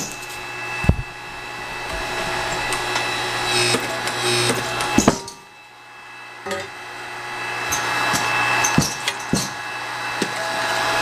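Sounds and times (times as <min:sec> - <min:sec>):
workshop machine humming: 0:00.0 - 0:05.2.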